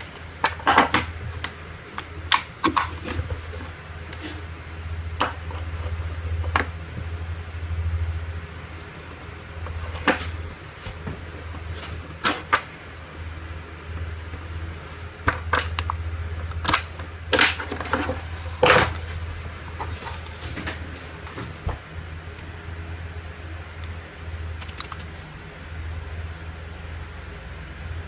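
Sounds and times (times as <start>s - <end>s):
steady low hum: 0.0s - 28.0s.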